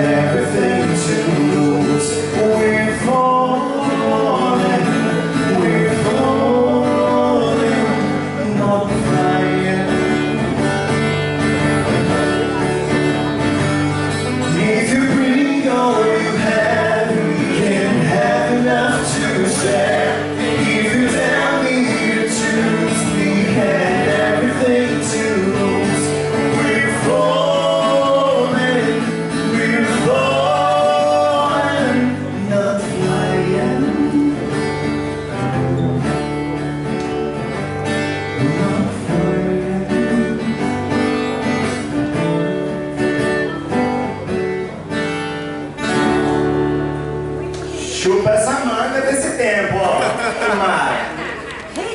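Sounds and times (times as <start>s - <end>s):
band playing live: 0.0s - 51.9s
person singing: 14.4s - 34.5s.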